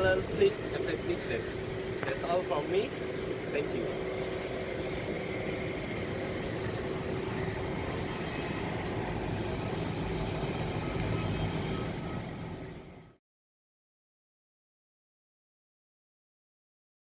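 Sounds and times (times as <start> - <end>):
engine-like rumble with hiss: 0.0 - 13.2.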